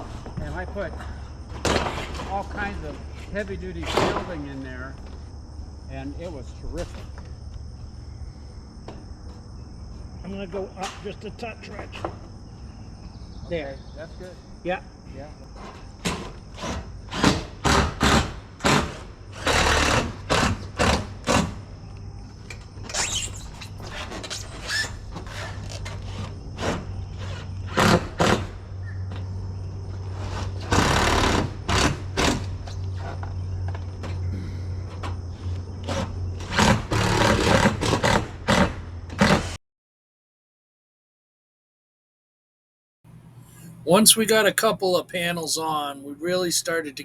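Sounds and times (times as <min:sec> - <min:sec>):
steady low hum: 0:43.1 - 0:47.0.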